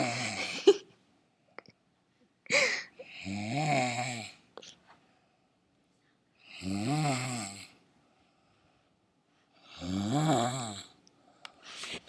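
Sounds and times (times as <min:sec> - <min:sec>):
person snoring: 0:00.0 - 0:00.6, 0:02.7 - 0:04.4, 0:06.5 - 0:07.8, 0:09.7 - 0:11.0.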